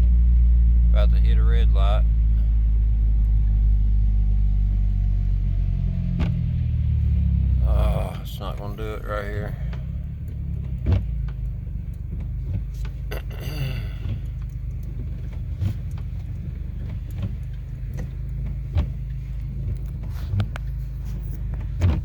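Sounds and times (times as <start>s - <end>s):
car engine humming: 0.0s - 22.0s
light clicks and knocks: 8.5s - 22.0s.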